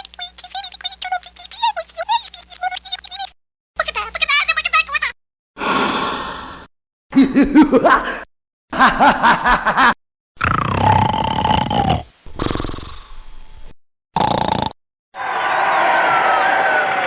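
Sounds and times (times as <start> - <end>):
breathy vocal sound: 5.6 - 6.7, 12.8 - 13.3.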